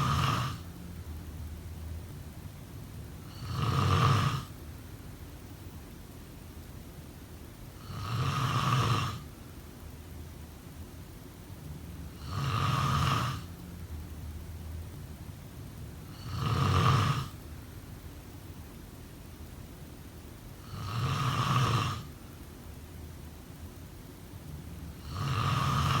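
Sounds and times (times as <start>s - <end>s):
person snoring: 0.0s - 0.6s, 3.3s - 4.5s, 7.8s - 9.2s, 12.2s - 13.5s, 16.1s - 17.4s, 20.6s - 22.1s, 25.0s - 26.0s.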